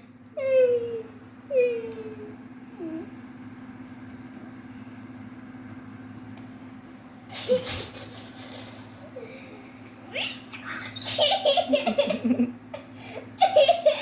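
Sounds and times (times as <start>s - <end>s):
steady low hum: 0.0s - 14.0s
person laughing: 7.4s - 8.9s, 10.2s - 14.0s.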